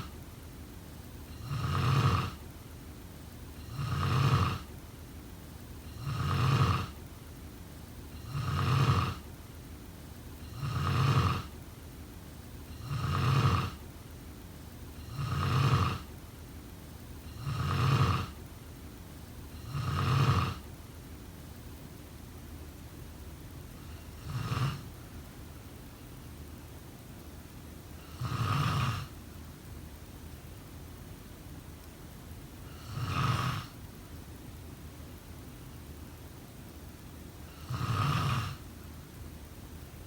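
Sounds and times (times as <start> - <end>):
person snoring: 1.3 - 2.4, 3.6 - 4.7, 5.9 - 7.0, 8.2 - 9.2, 10.5 - 11.5, 12.8 - 13.8, 15.0 - 16.1, 23.8 - 24.9, 32.7 - 33.8, 37.5 - 38.6.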